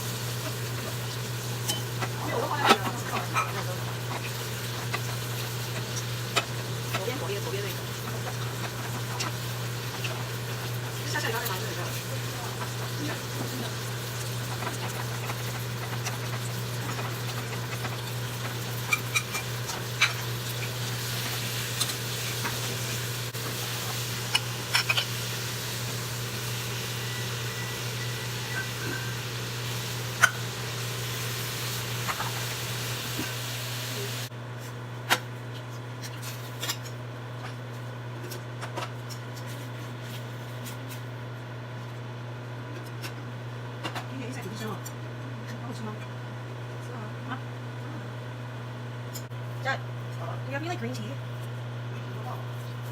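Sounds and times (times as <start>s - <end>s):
utensils clicking against a bowl: 1.6s - 22.7s, 23.9s - 25.2s.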